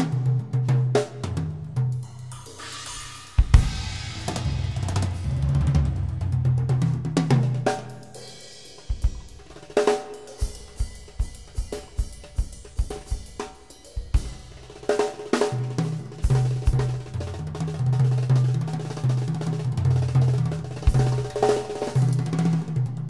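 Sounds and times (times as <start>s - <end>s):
cymbal hits: 2.1s - 6.6s
deep bass line: 3.6s - 7.1s
kick drum beats: 10.4s - 14.8s.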